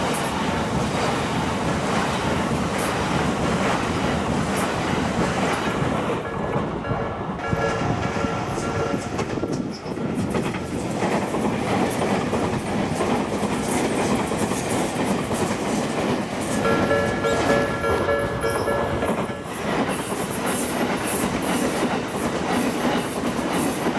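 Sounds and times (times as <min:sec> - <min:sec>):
train wheels clattering over rails: 0:00.0 - 0:23.9
level crossing bell ringing: 0:07.4 - 0:09.2, 0:16.6 - 0:19.5.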